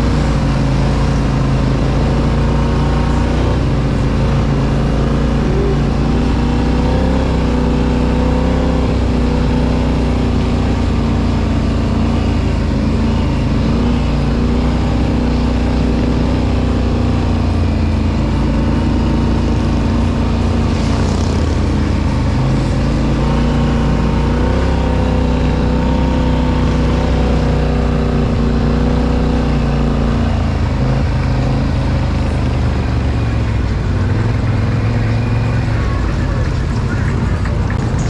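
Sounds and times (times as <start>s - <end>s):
off-road vehicle engine running: 0.0s - 38.0s.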